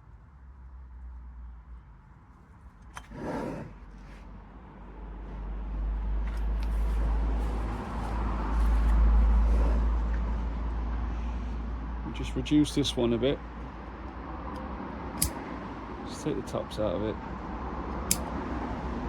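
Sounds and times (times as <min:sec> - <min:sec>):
motor vehicle passing: 0:04.9 - 0:12.4
click: 0:14.6 - 0:15.4.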